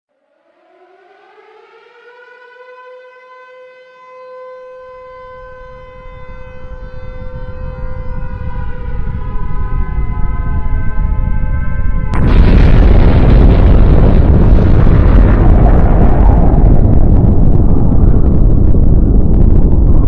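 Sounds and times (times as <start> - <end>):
civil defence siren wailing: 0.1 - 12.7
deep explosion rumble: 6.0 - 20.0.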